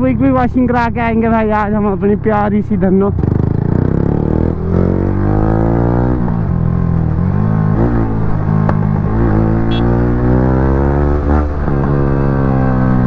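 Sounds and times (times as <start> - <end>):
motorcycle engine revving: 3.2 - 13.0.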